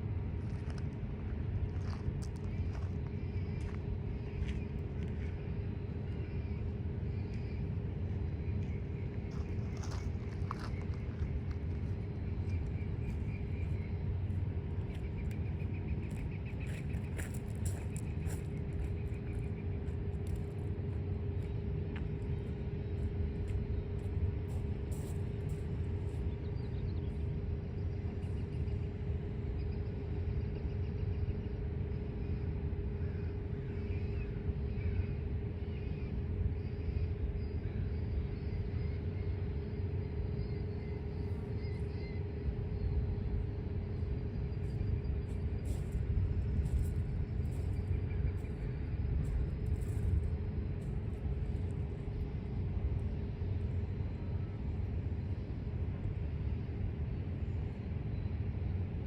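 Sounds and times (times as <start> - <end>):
freight train rumbling: 0.0 - 59.0.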